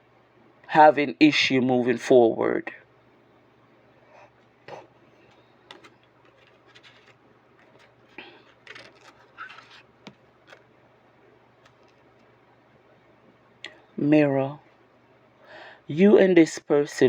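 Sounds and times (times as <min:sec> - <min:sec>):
cards clicking and rustling: 0:05.2 - 0:10.7, 0:11.6 - 0:12.3.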